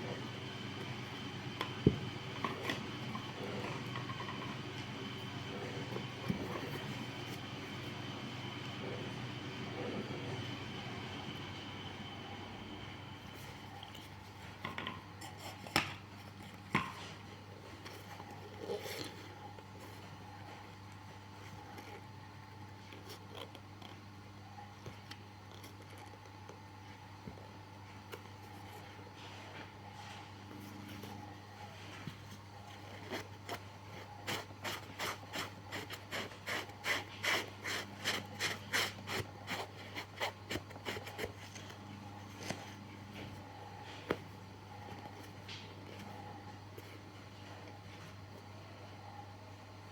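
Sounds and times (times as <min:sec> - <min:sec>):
steady low hum: 0:00.0 - 0:49.9.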